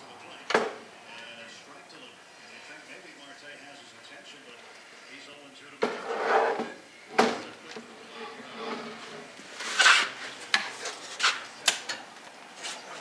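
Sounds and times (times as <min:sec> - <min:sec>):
scraping rub: 0:05.9 - 0:06.8, 0:08.0 - 0:11.5.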